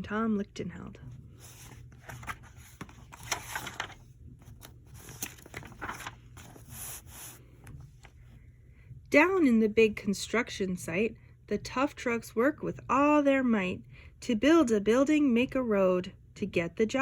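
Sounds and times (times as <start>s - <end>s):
paper pages rustling: 1.2s - 8.4s.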